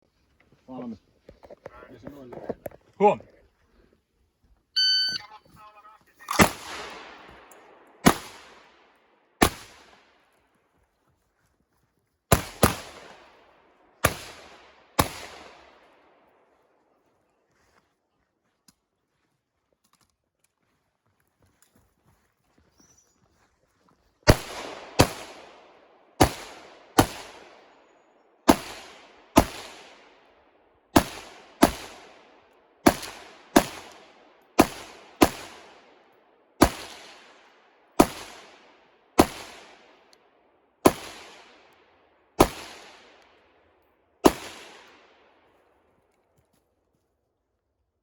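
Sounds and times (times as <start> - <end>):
echoing gunshots: 6.3 - 10.2, 12.3 - 16.3, 24.3 - 40.0, 40.8 - 41.8, 42.4 - 43.6, 44.2 - 45.5.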